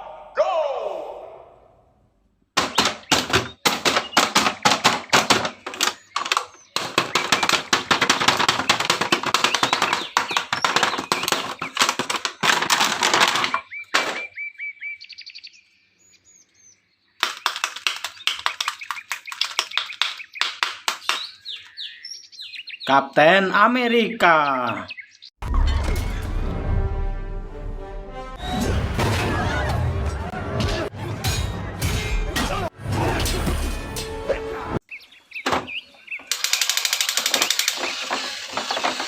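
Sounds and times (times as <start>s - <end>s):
birds chirping: 2.4s - 26.5s, 33.8s - 39.0s.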